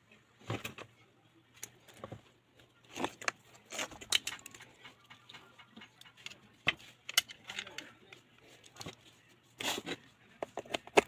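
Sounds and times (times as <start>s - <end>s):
small hard objects clicking: 3.2s - 7.9s.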